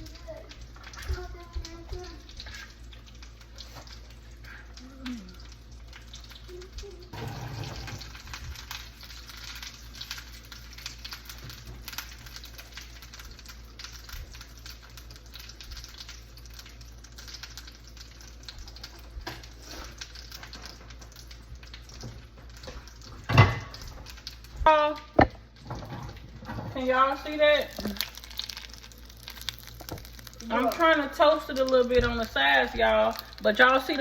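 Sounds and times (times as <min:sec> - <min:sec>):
butter sizzling in a frying pan: 0:00.0 - 0:34.0.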